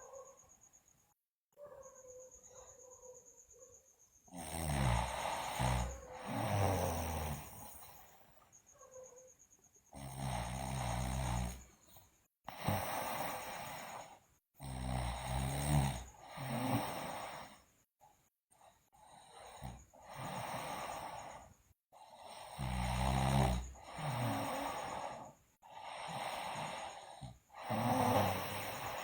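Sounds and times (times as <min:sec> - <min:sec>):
girl snoring loudly: 0:04.3 - 0:08.2, 0:10.0 - 0:11.8, 0:12.5 - 0:17.6, 0:18.9 - 0:29.0.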